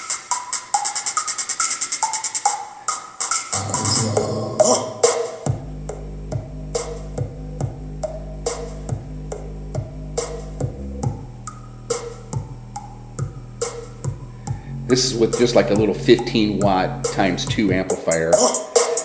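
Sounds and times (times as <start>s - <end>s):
drum machine beat: 3.3s - 19.0s
deep bass line: 3.6s - 17.9s.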